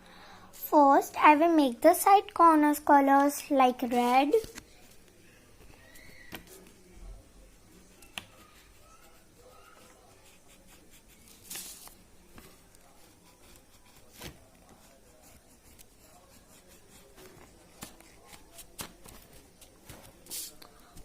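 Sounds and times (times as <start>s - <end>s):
colouring strokes on paper: 7.4s - 21.0s
paper and pen taps: 8.0s - 8.4s, 17.2s - 21.0s.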